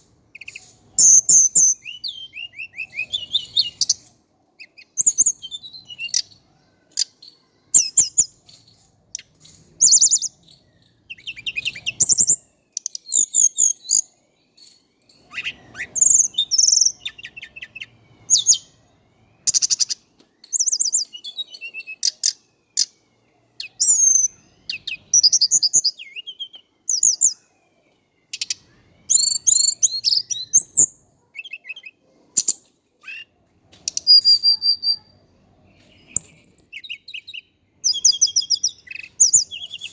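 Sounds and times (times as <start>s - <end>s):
flycatcher chirping and trilling: 7.0s - 18.7s, 19.5s - 22.9s, 23.6s - 27.4s, 28.3s - 31.8s, 36.1s - 39.9s.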